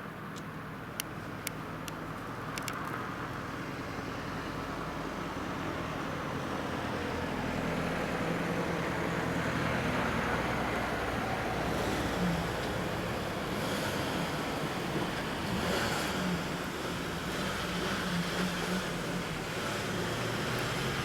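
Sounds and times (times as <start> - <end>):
low engine hum: 0.0 - 21.0
road traffic: 0.0 - 21.0
sharp clicks: 0.4 - 3.0.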